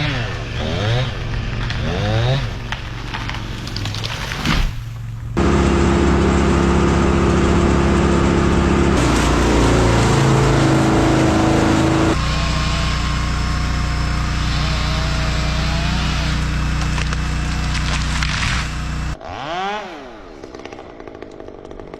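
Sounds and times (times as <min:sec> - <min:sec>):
large engine running: 0:05.1 - 0:19.2.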